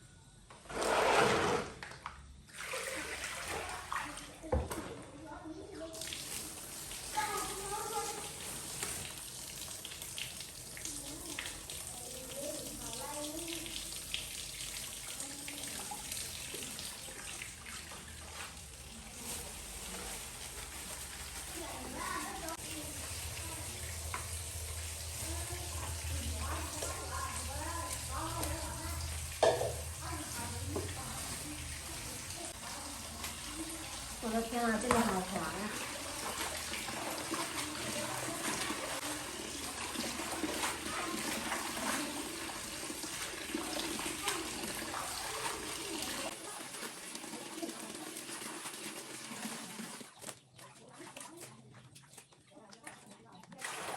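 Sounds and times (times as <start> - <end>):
tap water running into sink: 5.9 - 50.3.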